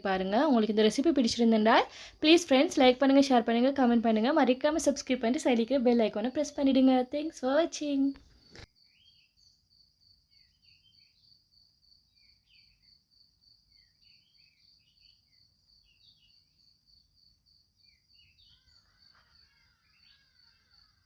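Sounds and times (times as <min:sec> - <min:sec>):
insect trilling: 0:09.8 - 0:21.0
birds chirping: 0:17.9 - 0:21.0.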